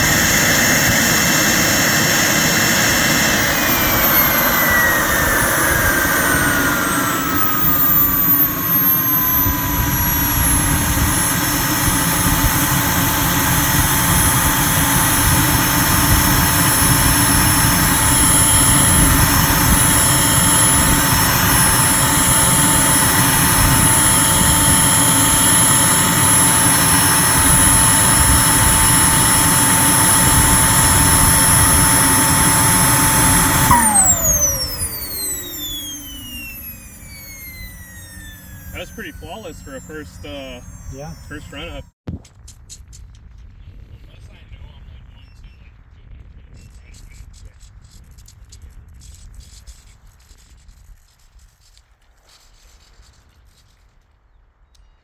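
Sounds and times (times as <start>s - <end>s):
jet turbine whine: 0.0s - 42.0s.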